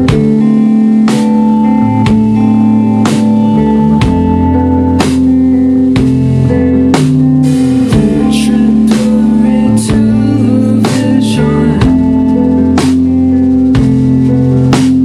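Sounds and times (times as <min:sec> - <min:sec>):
held guitar chords: 0:00.0 - 0:15.0
drum hits: 0:07.0 - 0:13.2, 0:13.8 - 0:15.0.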